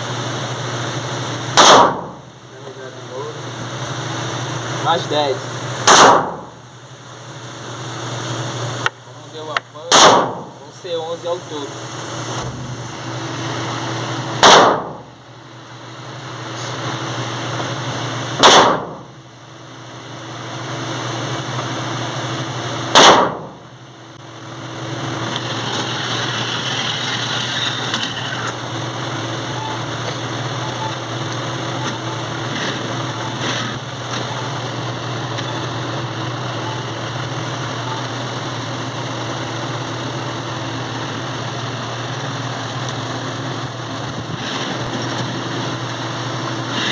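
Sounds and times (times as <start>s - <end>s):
pistol shots: 1.6s - 2.1s, 5.8s - 6.4s, 9.9s - 10.5s, 14.4s - 15.0s, 18.4s - 19.0s, 22.9s - 23.5s.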